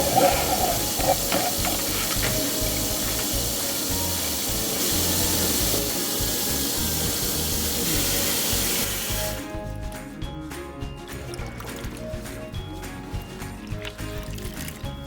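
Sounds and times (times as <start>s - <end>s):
rushing water hiss: 0.0s - 9.5s
background music: 0.0s - 15.0s.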